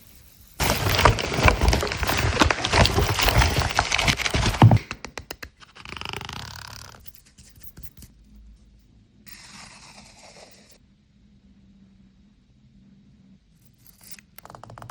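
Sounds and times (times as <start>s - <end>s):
packaging crinkling and tearing: 0.6s - 5.8s.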